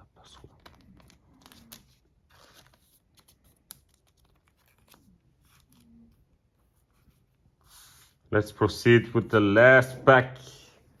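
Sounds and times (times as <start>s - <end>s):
trading cards rustling and clicking: 0.2s - 8.2s.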